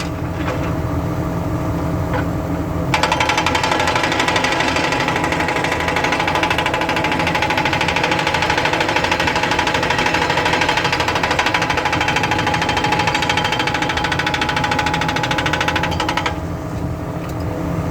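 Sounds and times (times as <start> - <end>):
hydraulic breaker pounding: 3.0 - 16.4.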